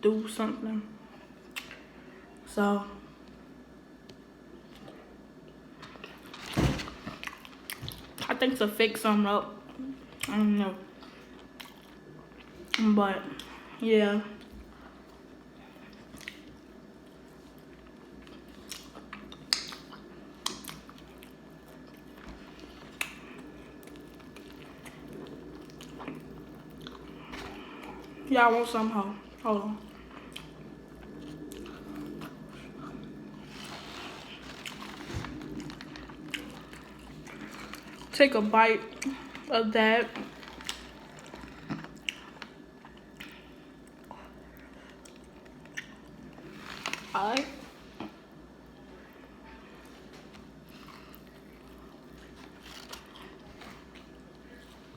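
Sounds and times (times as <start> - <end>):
chewing and biting food: 11.2 - 12.8, 15.1 - 28.2, 29.3 - 38.2, 40.1 - 47.1, 50.1 - 54.9.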